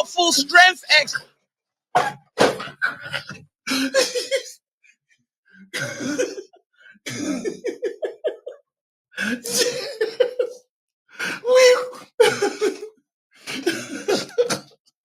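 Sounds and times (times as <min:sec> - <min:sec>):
man making coughing sounds: 0:02.0 - 0:04.6, 0:05.8 - 0:06.5, 0:07.1 - 0:08.4, 0:09.4 - 0:10.6.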